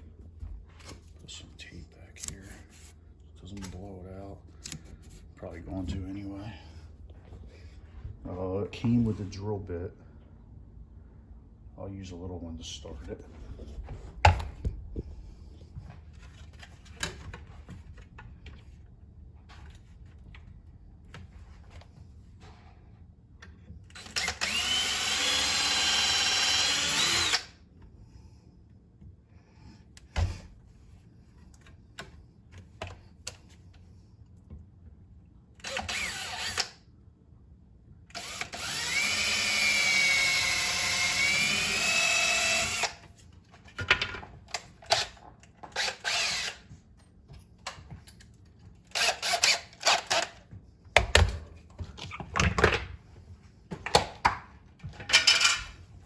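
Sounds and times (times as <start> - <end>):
power drill whining: 23.9 - 27.5, 35.6 - 36.8, 38.1 - 43.0, 45.7 - 46.6, 48.9 - 50.4.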